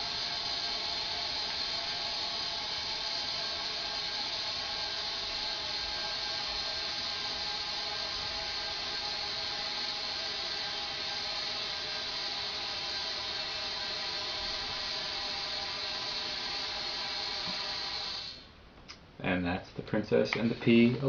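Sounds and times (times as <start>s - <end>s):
compressed air hissing through valve: 0.0s - 18.6s, 20.2s - 21.0s
faint steady tones: 19.6s - 21.0s.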